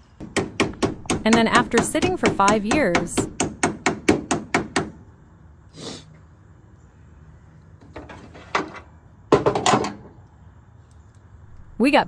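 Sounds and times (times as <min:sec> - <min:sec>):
hammer tapping metal: 0:00.2 - 0:05.0
metal knocks: 0:00.2 - 0:05.0, 0:07.8 - 0:10.1.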